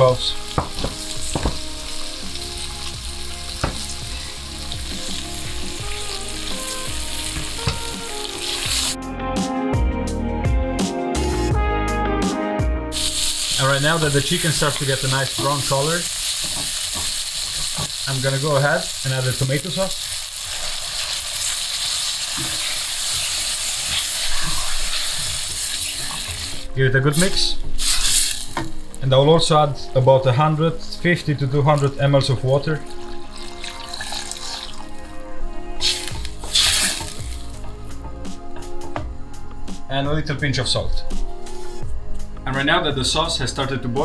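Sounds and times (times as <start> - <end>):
food sizzling in a pan: 0.0 - 9.0, 12.9 - 37.8.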